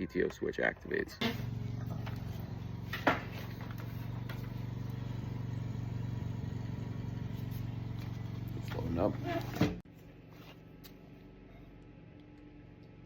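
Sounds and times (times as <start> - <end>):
riding mower engine running: 1.2 - 9.7.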